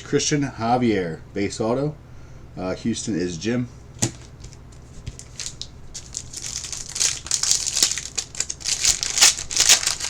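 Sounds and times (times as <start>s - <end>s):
packaging crinkling: 4.0s - 10.0s.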